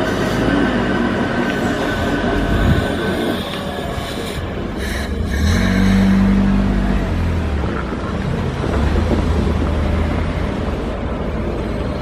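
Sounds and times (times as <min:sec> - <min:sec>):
passing vehicle hum: 0:00.0 - 0:12.0.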